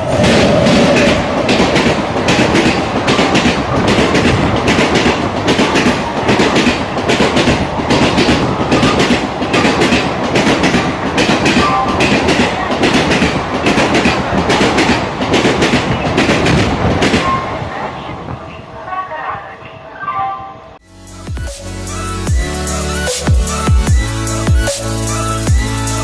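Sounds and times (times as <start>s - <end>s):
train wheels clattering over rail joints: 0.0s - 17.3s.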